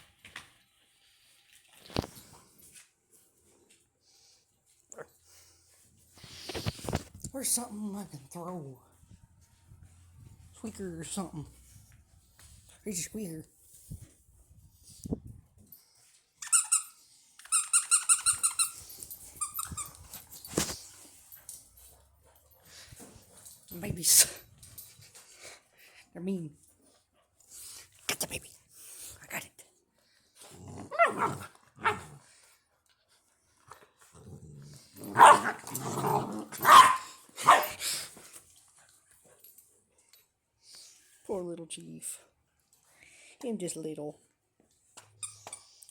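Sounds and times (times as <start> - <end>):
squeaker dog toy squeaking: 16.4 - 18.8, 19.4 - 20.1
puppy growling: 30.4 - 32.2, 34.1 - 36.7
puppies barking: 36.6 - 37.7.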